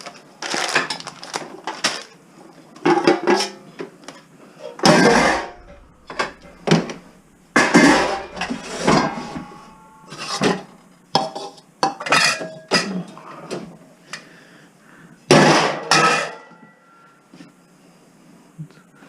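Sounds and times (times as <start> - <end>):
metal pots and pans clanking: 4.8 - 13.0, 15.3 - 16.6.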